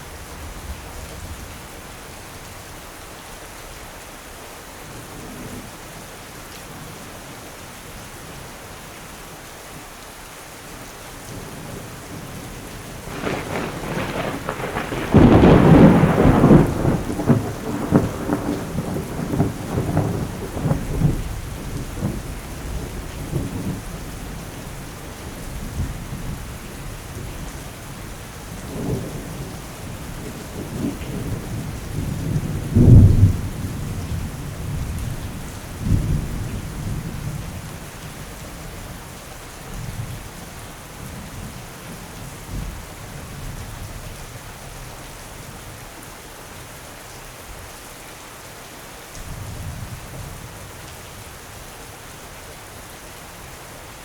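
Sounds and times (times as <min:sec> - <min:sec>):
steady rain: 0:00.0 - 0:54.0
thunder rumbling: 0:12.2 - 0:37.7
sharp thunderclap: 0:13.0 - 0:22.2, 0:30.2 - 0:35.0.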